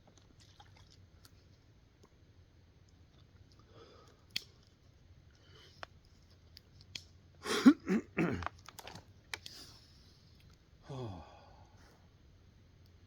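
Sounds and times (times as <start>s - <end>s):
person gulping: 7.4s - 8.5s.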